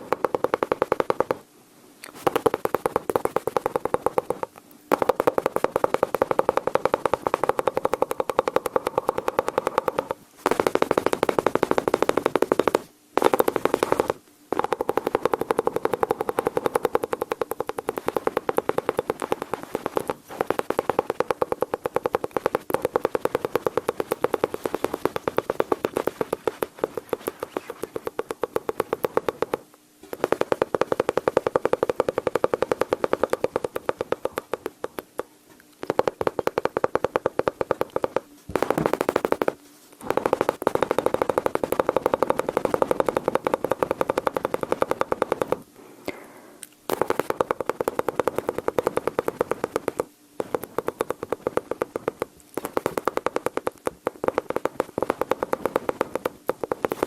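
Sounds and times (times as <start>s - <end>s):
mouth imitating machine-gun fire: 38.5s - 45.6s.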